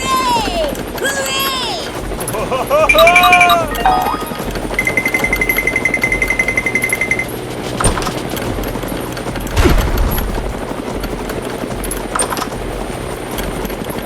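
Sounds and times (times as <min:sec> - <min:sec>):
fast clatter of small ticks: 0:04.4 - 0:14.0
loud thump: 0:09.6 - 0:10.6.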